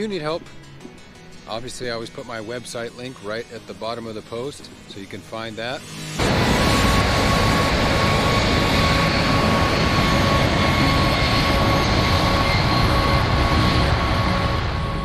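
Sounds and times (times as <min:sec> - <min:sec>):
jet engine high whine: 0:00.0 - 0:15.0
jet engines roaring: 0:05.0 - 0:15.0.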